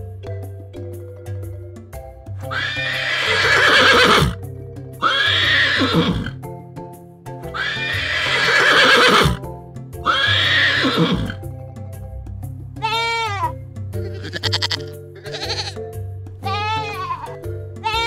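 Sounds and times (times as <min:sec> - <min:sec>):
background music: 0:00.0 - 0:18.0
horse whinnying: 0:02.4 - 0:04.4, 0:05.0 - 0:06.4, 0:07.5 - 0:09.4, 0:10.0 - 0:11.4, 0:12.8 - 0:15.8, 0:16.4 - 0:18.0.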